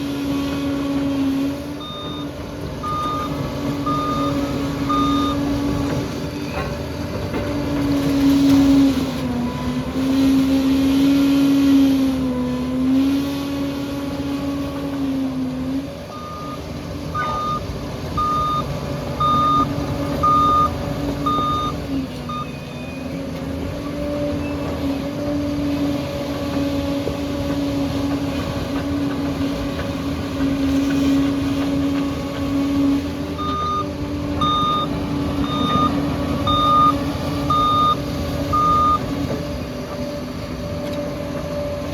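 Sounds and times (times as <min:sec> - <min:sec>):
bulldozer diesel engine running: 0:00.0 - 0:41.9
reversing alarm beeping: 0:01.8 - 0:06.0, 0:16.1 - 0:23.2, 0:33.4 - 0:39.3.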